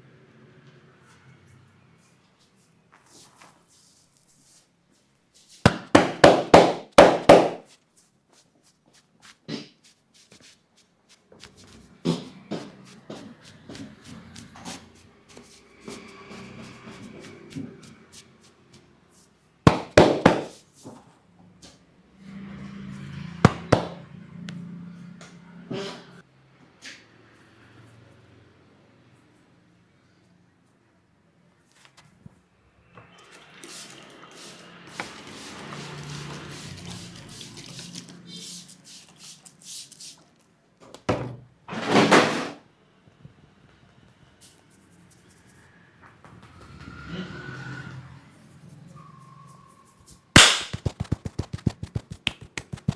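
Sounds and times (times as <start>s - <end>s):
hands rubbing and slapping: 5.4s - 11.9s, 19.7s - 20.7s, 23.5s - 24.0s, 50.1s - 52.9s
sharp percussive massage strikes: 5.7s - 7.6s, 19.7s - 20.6s, 23.5s - 24.0s, 50.4s - 52.9s.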